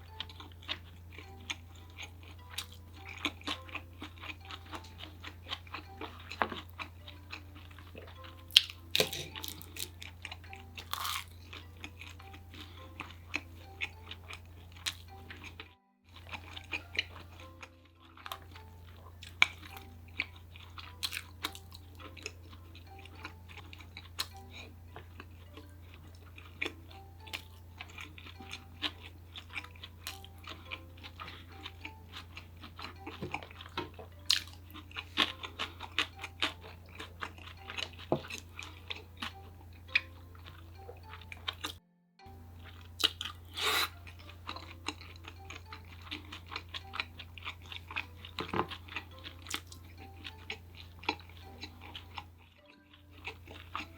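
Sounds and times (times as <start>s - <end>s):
chewing with crunches: 0.0s - 41.8s, 42.4s - 53.9s
soft background music: 0.0s - 53.9s.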